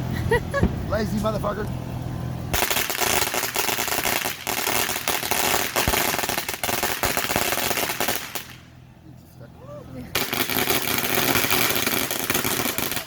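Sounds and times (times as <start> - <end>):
firecrackers popping: 0.4 - 1.2, 2.5 - 8.7, 10.2 - 13.0.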